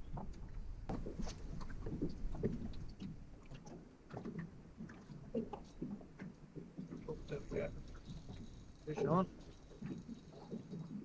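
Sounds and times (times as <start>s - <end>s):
waves lapping against boat hull: 0.0s - 11.0s.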